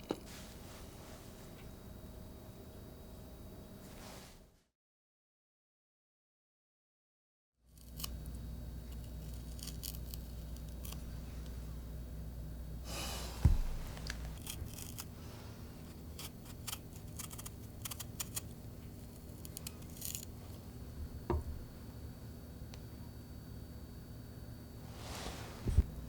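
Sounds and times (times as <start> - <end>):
thump: 13.4 - 13.8, 25.6 - 25.9.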